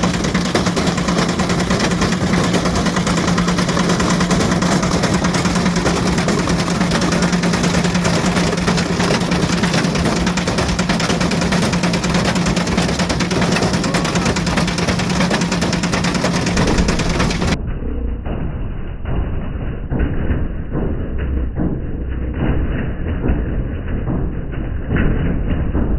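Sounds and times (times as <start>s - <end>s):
brick clattering in drum: 0.0s - 17.6s
washing machine motor hum: 0.0s - 17.6s.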